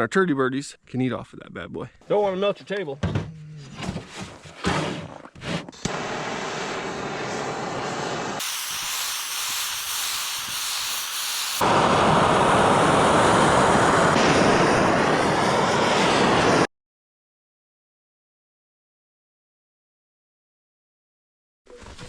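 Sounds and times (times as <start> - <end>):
torch flame hissing: 5.9 - 16.7.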